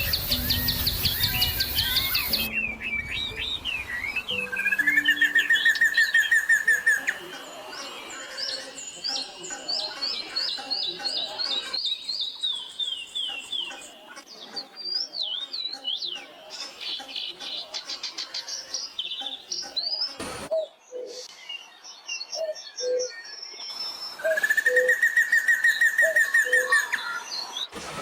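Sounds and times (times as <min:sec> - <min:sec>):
loud fast bird trill: 0:00.0 - 0:06.9
thin high bird trill: 0:00.0 - 0:07.3.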